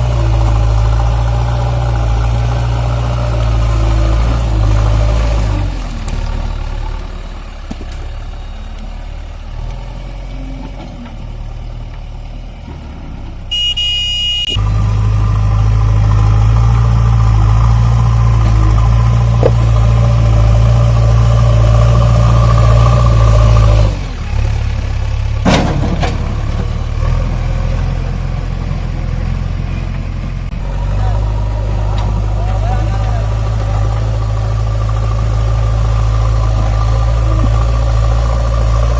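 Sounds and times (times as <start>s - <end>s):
diesel engine running: 0.0s - 38.9s
high beep: 13.5s - 14.6s.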